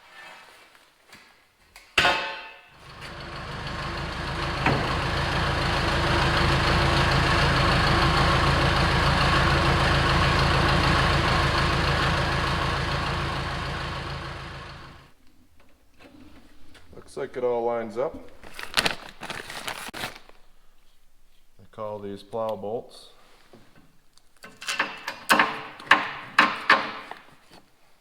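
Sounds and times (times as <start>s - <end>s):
engine running steadily: 2.8s - 15.1s.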